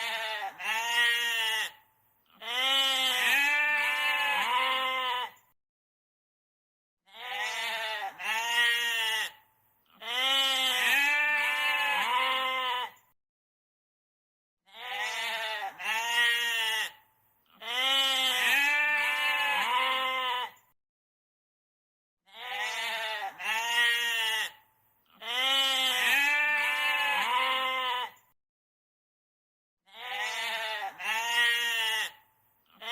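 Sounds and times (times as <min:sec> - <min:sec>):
goat bleating: 0:00.0 - 0:05.4, 0:07.1 - 0:13.0, 0:14.7 - 0:20.6, 0:22.3 - 0:28.2, 0:29.9 - 0:32.9.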